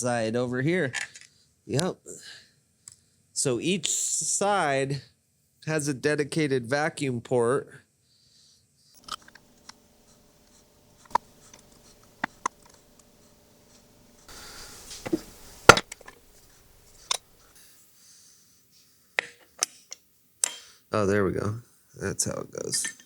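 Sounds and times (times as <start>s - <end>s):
metal parts clicking and knocking: 22.7s - 23.0s.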